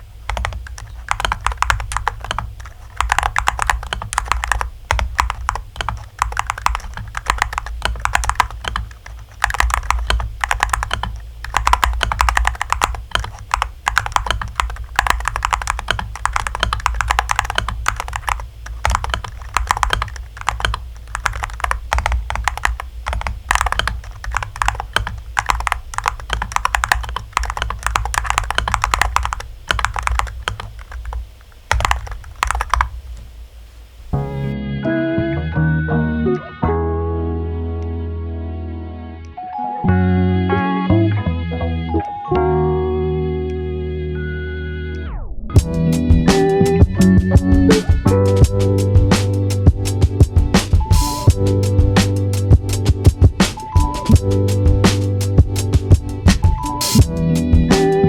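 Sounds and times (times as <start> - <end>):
keyboard typing clacks: 0.0 - 33.3, 45.6 - 58.0
steady low hum: 0.0 - 34.6.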